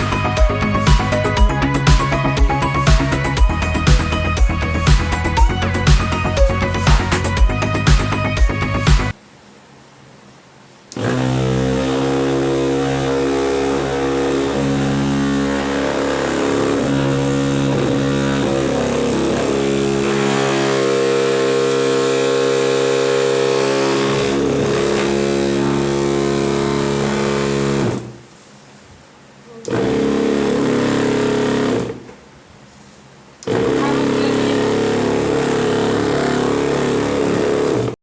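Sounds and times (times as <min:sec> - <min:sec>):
bench grinder motor whine: 0:11.0 - 0:28.0.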